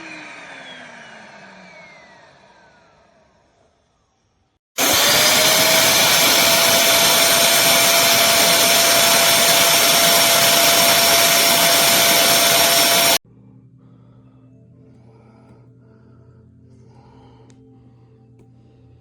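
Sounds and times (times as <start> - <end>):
vacuum motor whine: 0.0 - 3.3, 4.8 - 13.2.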